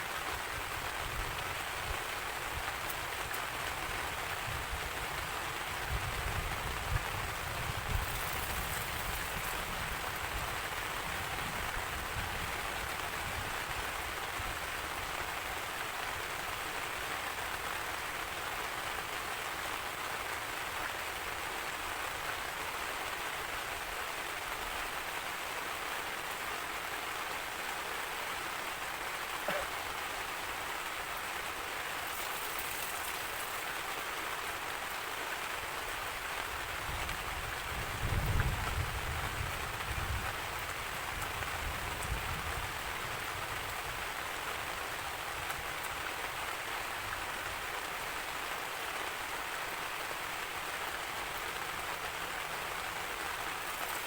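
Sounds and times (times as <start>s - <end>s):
heavy rain falling: 0.0s - 54.0s.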